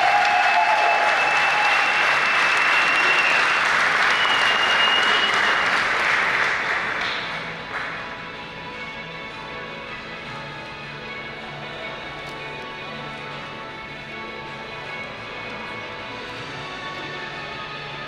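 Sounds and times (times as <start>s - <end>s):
audience applauding: 0.0s - 8.1s.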